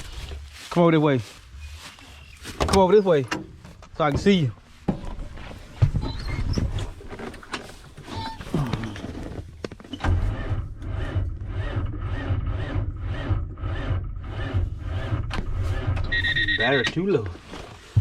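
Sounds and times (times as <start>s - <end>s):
diesel engine cranking slowly: 7.1s - 16.6s.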